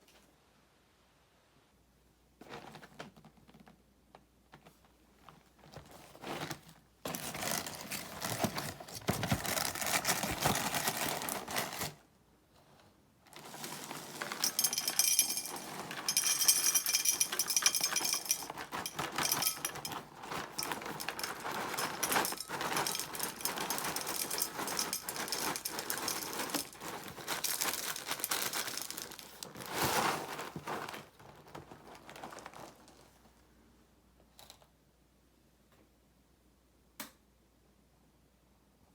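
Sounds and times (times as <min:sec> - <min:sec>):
cereal box and bag crinkling: 0:05.2 - 0:12.0, 0:13.3 - 0:33.4
cereal rattling in box: 0:07.1 - 0:12.0, 0:13.3 - 0:33.1.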